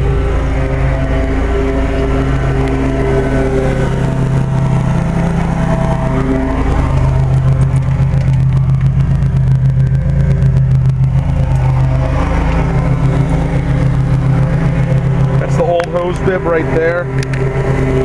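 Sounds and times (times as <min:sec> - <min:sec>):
engine humming: 0:00.0 - 0:18.0.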